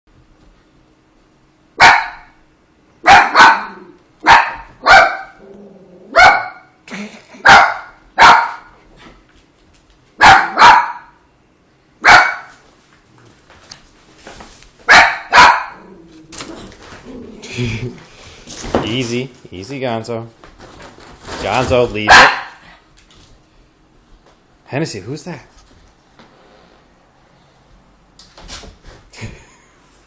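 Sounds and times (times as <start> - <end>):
dog barking: 1.8 - 2.4, 3.0 - 5.4, 6.1 - 6.8, 7.4 - 8.7, 10.2 - 11.2, 12.0 - 12.6, 14.9 - 15.8, 22.1 - 22.6.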